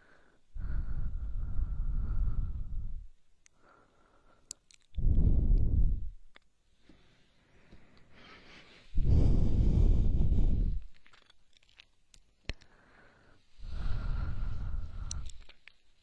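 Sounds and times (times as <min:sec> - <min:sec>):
heavy breaths into microphone: 0:00.0 - 0:06.2, 0:06.8 - 0:11.1, 0:12.6 - 0:15.6
faint mouth clicks: 0:04.4 - 0:06.5, 0:14.7 - 0:15.8.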